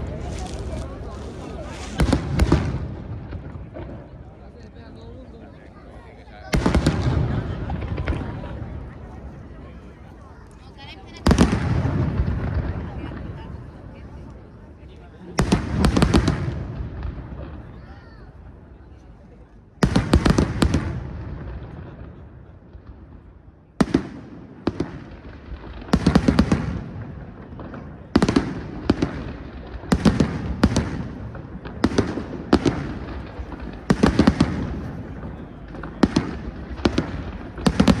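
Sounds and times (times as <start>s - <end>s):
firework crackling: 0.0s - 4.4s, 23.8s - 38.0s
firework bangs: 0.0s - 4.6s, 6.5s - 14.5s, 15.3s - 18.4s, 19.8s - 38.0s.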